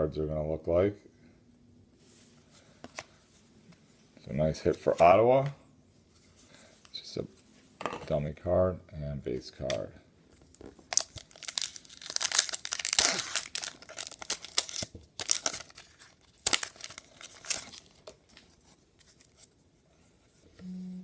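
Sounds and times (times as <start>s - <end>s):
foil wrapper crinkling: 10.5s - 19.5s.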